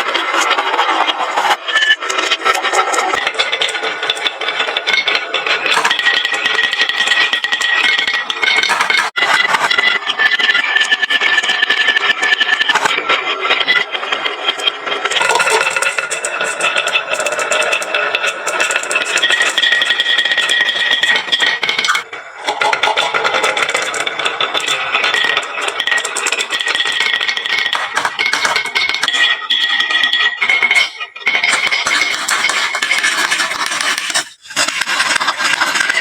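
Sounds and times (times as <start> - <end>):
marbles clattering down wooden run: 14.6 - 36.0.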